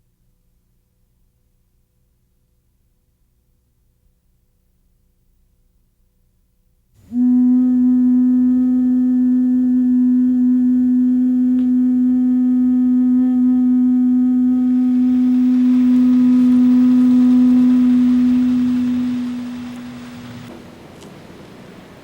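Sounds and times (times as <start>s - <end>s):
breathy hiss: 7.0s - 20.5s
ocarina holding low note: 7.0s - 20.5s.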